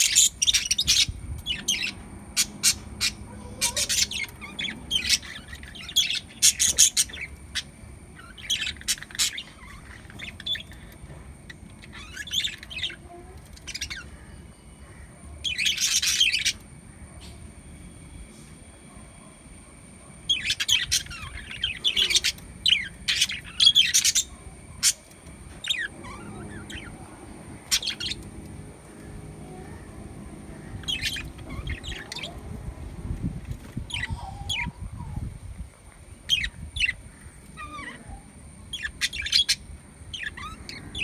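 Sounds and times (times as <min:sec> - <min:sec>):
parrots chirping and squawking: 0:00.0 - 0:17.4, 0:20.3 - 0:35.3, 0:36.3 - 0:41.0
faint high-pitched tone: 0:24.3 - 0:33.8.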